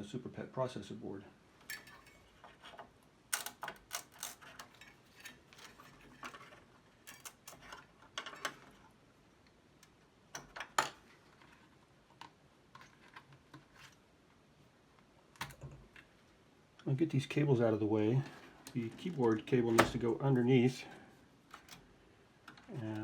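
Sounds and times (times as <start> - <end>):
electronic parts clicking: 3.3 - 6.2.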